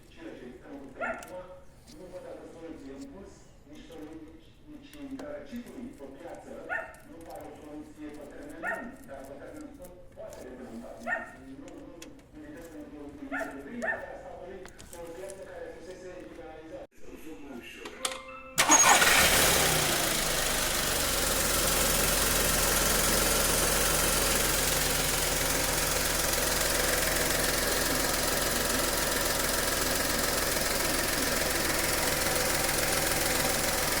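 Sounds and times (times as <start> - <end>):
petrol engine idling: 18.6 - 34.0.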